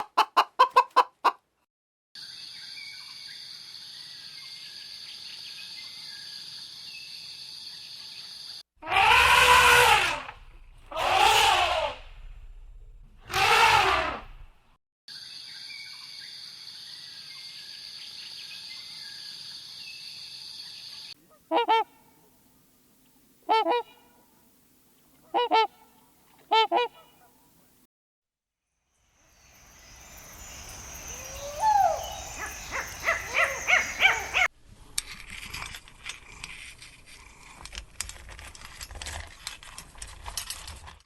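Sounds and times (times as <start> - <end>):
high insect chorus: 29.0 - 34.5.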